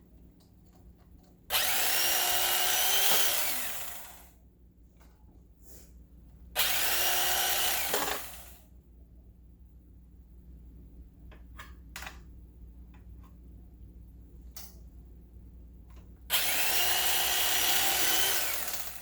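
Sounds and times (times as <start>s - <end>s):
electric carving knife running: 1.5s - 4.3s, 6.6s - 8.6s, 16.3s - 19.0s.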